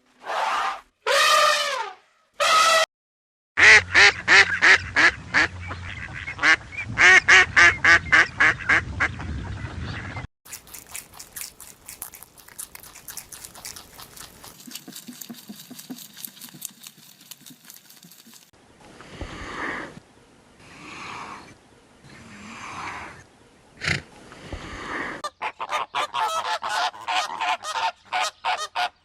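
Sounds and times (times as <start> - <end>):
duck quacking: 25.2 - 29.0.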